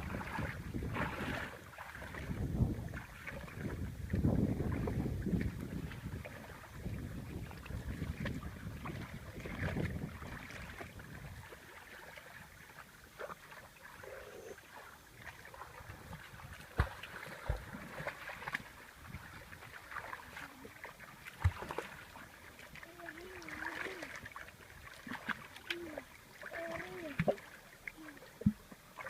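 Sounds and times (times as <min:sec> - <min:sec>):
wind buffeting microphone: 0:00.0 - 0:11.5
water splashing and sloshing: 0:00.0 - 0:29.0.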